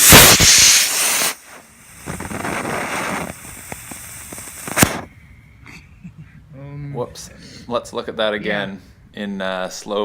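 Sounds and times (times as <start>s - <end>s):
rocket motor rushing hiss: 0.0s - 5.1s.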